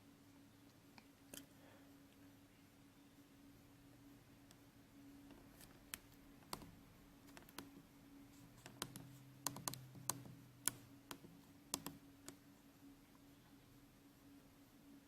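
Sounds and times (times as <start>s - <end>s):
faint low hum: 0.0s - 15.0s
sharp clicks: 8.6s - 12.4s.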